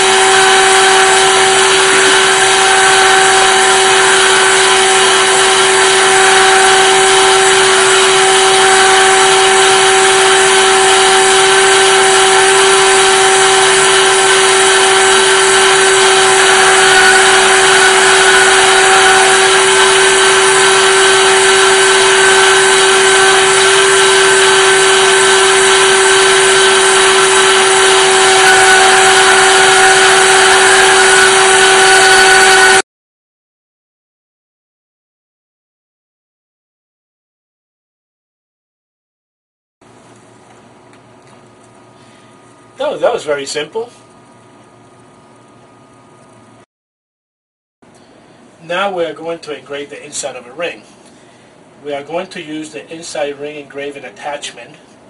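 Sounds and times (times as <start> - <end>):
machine spindle whining: 0.0 - 32.8.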